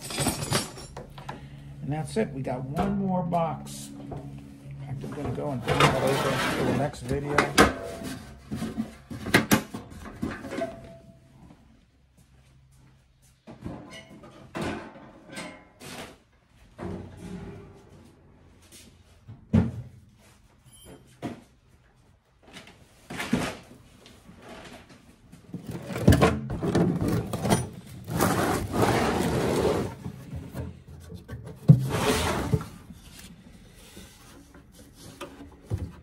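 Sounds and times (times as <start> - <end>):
toolbox scraping and rattling: 3.8 - 11.1, 23.1 - 36.0.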